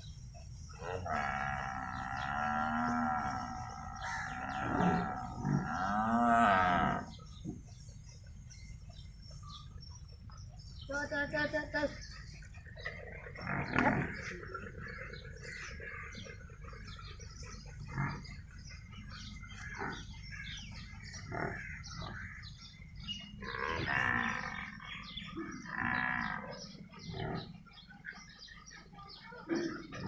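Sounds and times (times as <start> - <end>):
small birds chirping: 0.0 - 30.0
long animal calls: 0.8 - 7.3, 12.0 - 28.7.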